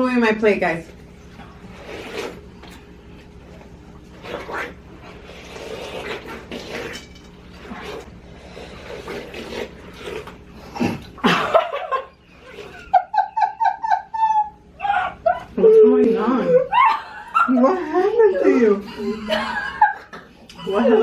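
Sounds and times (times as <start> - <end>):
wet chewing and slurping: 1.0 - 11.2
person laughing: 11.2 - 15.7, 16.4 - 20.9.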